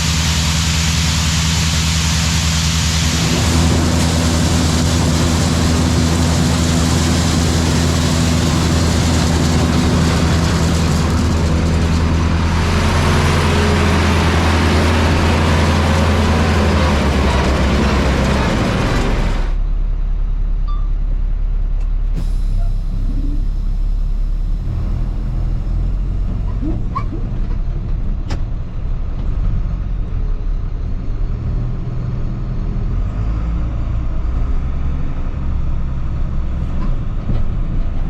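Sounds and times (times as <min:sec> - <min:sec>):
loud rushing noise: 0:00.0 - 0:19.6
farm machinery engine running: 0:00.0 - 0:33.2.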